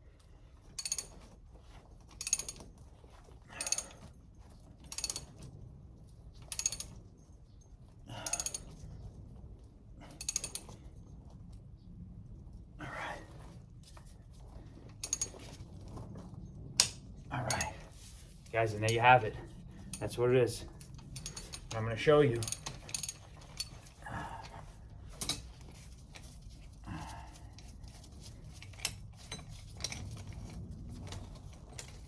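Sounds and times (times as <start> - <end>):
ratchet wrench clicking: 0.8 - 1.2, 4.9 - 5.3, 6.5 - 6.9, 8.2 - 8.7, 10.2 - 10.7, 15.0 - 15.4.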